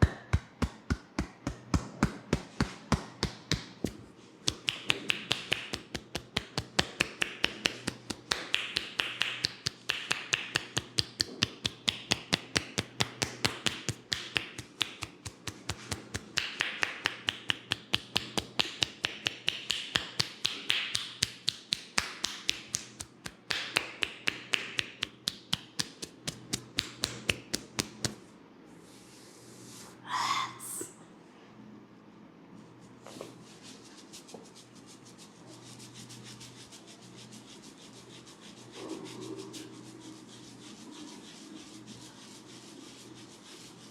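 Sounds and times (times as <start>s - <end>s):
hands tapping on head: 0.0s - 28.2s
soft rustle: 28.2s - 30.0s, 32.5s - 43.9s.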